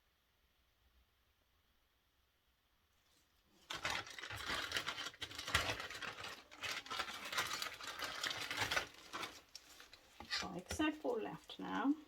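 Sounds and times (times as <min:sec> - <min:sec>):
hands handling plastic parts: 0:03.5 - 0:11.6.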